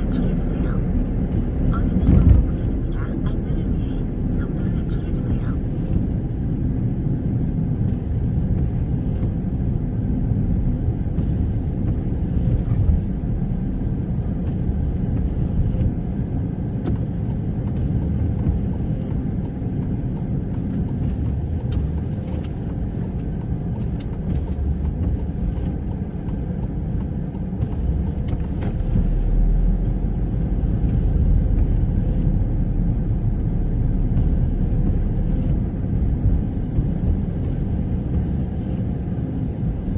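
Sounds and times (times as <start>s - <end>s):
car engine and tyres rumbling: 0.0s - 39.9s
deeper hum: 0.0s - 39.9s.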